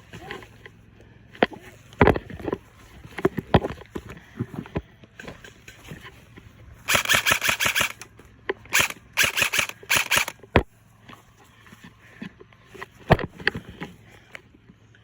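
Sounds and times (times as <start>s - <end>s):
airsoft gun full-auto bursts: 6.9s - 8.1s, 8.7s - 10.4s.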